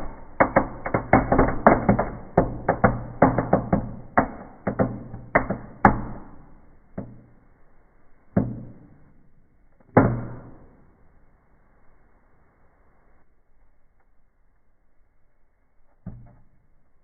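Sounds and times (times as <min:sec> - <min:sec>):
table fireworks popping: 0:00.0 - 0:07.4.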